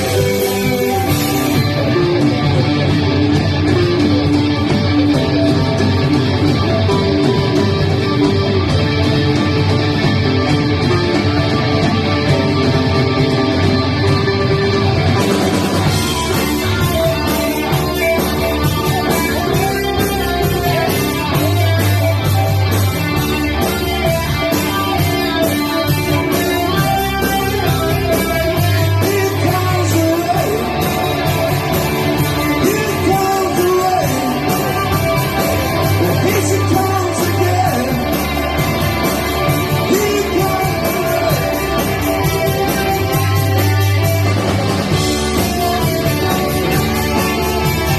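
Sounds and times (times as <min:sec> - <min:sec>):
electric guitar: 0:00.0 - 0:47.9
person singing: 0:26.5 - 0:31.1, 0:32.2 - 0:38.5, 0:39.6 - 0:42.2.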